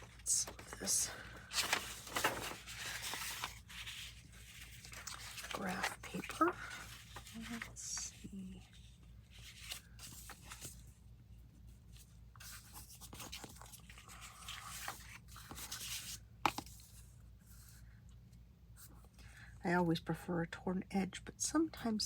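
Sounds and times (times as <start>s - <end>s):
paper rustling and scraping: 0.0s - 11.0s, 11.8s - 17.8s.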